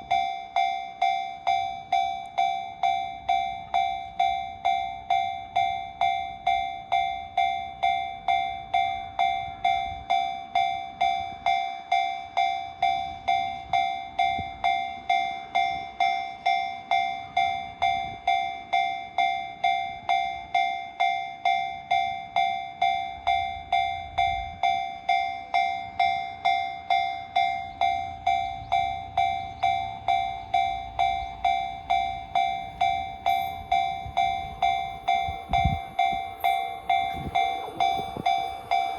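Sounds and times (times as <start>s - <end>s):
crossing warning bell ringing: 0.0s - 38.9s
train rumble: 26.8s - 38.9s.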